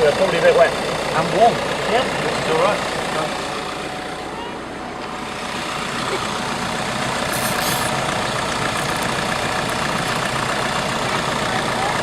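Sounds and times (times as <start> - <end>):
vehicle engine idling: 0.0 - 12.0
high zipping rasp: 7.3 - 8.0, 8.7 - 9.2.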